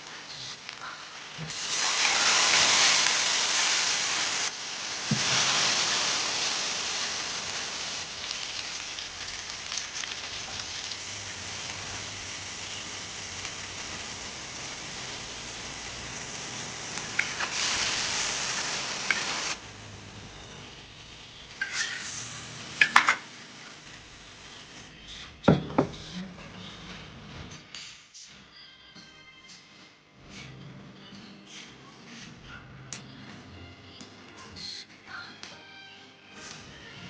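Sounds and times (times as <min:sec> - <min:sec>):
food sizzling in oil: 0:00.1 - 0:24.9.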